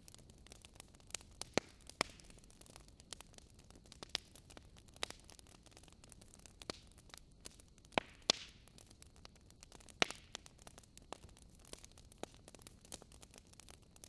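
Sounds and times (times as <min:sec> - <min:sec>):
wood fire crackling and popping: 0:00.0 - 0:14.0.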